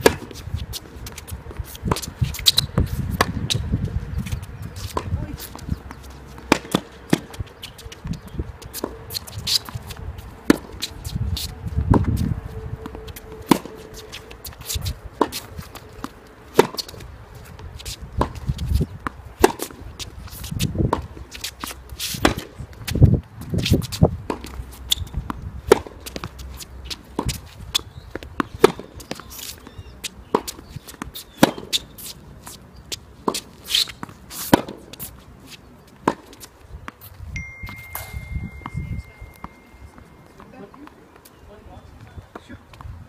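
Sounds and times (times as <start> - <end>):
tennis balls struck by rackets: 0.0 - 0.4, 1.0 - 3.6, 4.2 - 11.1, 15.1 - 17.1, 18.2 - 23.0, 24.2 - 37.0, 37.6 - 41.4
tennis balls bouncing on court: 0.0 - 12.2, 12.8 - 42.9.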